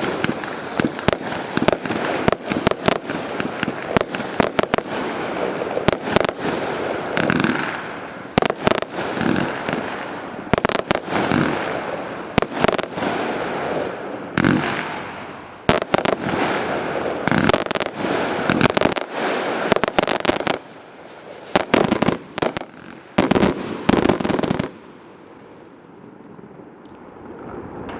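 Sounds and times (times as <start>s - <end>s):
fireworks crackling hiss: 0.0s - 25.0s
fireworks bangs: 0.0s - 25.5s.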